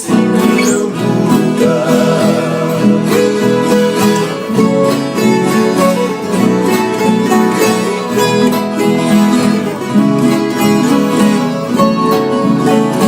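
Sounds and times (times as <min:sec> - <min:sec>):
acoustic guitars country music: 0:00.0 - 0:13.0.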